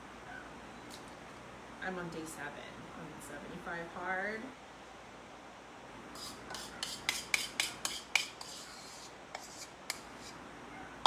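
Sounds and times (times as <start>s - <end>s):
rasping scrapes: 6.2s - 10.4s.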